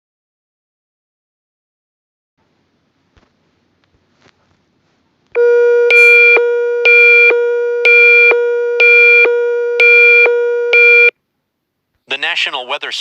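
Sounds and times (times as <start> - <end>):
electronic emergency alert tone: 5.4 - 11.1.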